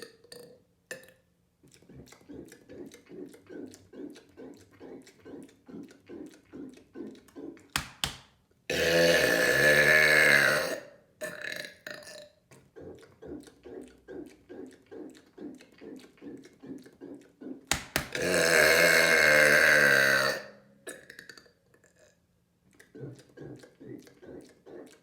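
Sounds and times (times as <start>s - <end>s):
person burping: 8.7s - 14.3s, 17.5s - 21.5s.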